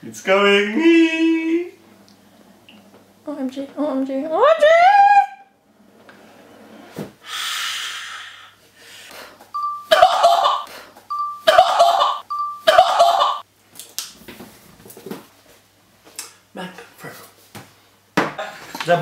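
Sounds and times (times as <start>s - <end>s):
person breathing rushing breath: 7.2s - 9.4s
person squealing: 11.5s - 13.4s.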